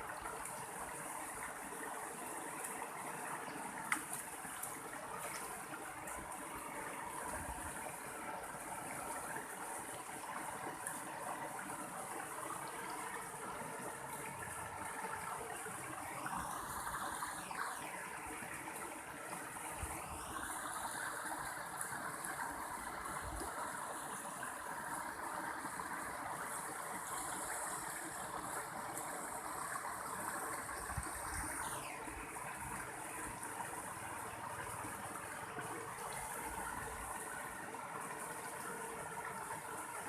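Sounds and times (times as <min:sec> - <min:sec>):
stream water flowing: 0:00.0 - 0:40.0.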